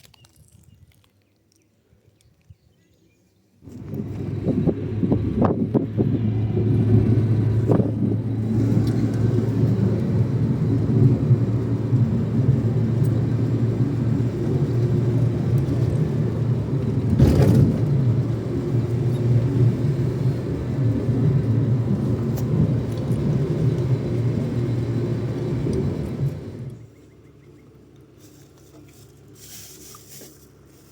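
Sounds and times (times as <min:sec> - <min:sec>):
vehicle engine rumbling: 0:03.6 - 0:30.9
knocks and rattles: 0:16.8 - 0:18.2.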